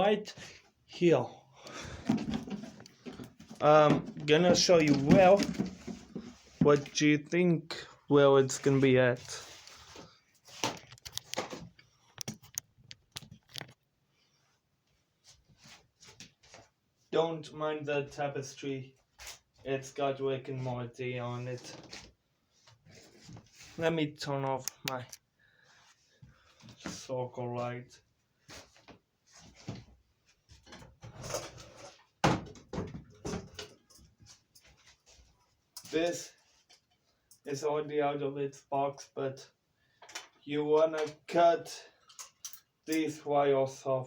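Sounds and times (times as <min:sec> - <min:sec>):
small handling clicks and rustles: 0:01.6 - 0:07.0, 0:09.2 - 0:13.9, 0:21.5 - 0:25.3, 0:33.0 - 0:37.6, 0:39.9 - 0:43.1.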